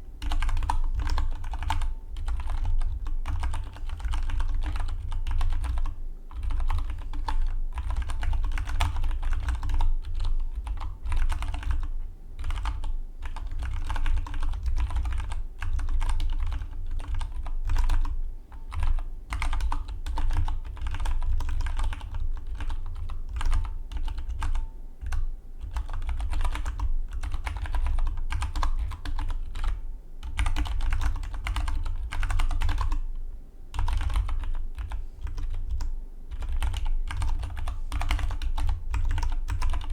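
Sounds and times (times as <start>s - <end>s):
fast typing on mechanical keyboard: 0.2s - 33.1s, 33.7s - 39.9s.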